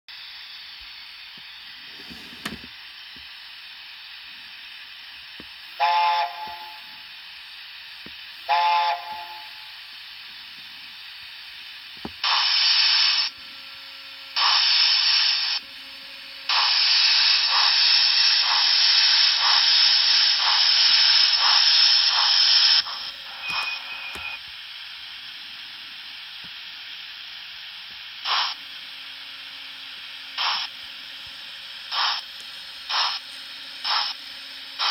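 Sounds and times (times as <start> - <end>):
simmering steam hiss: 0.1 - 13.3, 14.4 - 15.6, 16.5 - 24.0, 30.0 - 34.9
loud bursts of steam hiss: 3.7 - 13.3, 14.4 - 15.6, 16.4 - 24.1, 26.6 - 28.6, 30.2 - 34.9.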